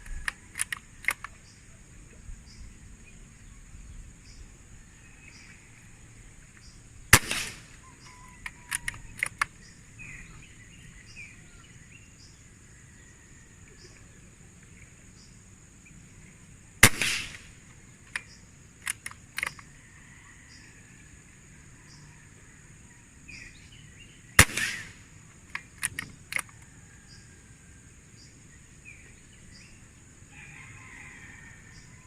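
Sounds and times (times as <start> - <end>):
metallic reloading clicks: 0.0 - 1.4, 8.4 - 9.5, 18.1 - 19.6, 25.5 - 26.5
air rifle shot: 7.1 - 7.8, 16.8 - 17.6, 24.4 - 25.1.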